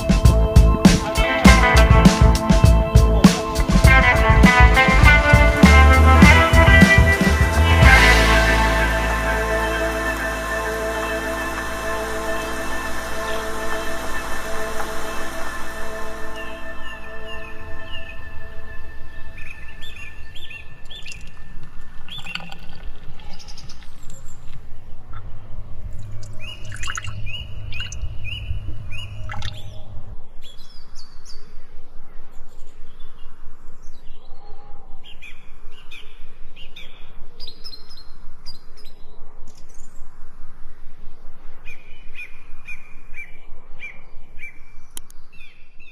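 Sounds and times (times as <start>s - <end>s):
low rumble: 3.9s - 16.8s.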